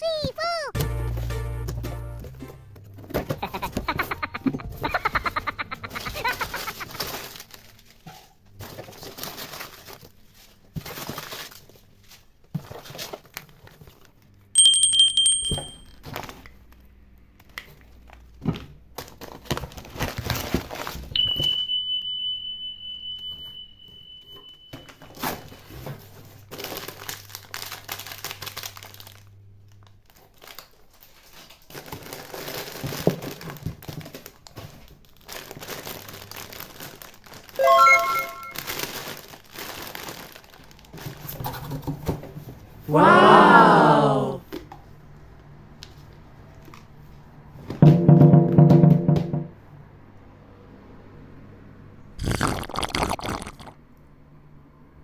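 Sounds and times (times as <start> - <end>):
packaging crinkling and rustling: 6.0 - 14.4, 17.4 - 21.1, 25.1 - 37.6, 38.6 - 41.9
short high ding: 14.6 - 16.0, 21.2 - 25.0, 37.6 - 38.6
packaging tearing: 26.5 - 29.2, 38.6 - 40.8
steady high beep tone: 37.6 - 38.6.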